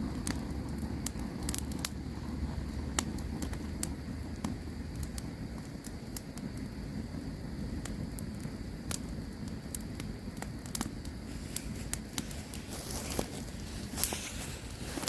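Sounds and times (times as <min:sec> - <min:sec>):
campfire crackling: 0:00.0 - 0:15.0
short hiss: 0:11.2 - 0:15.0.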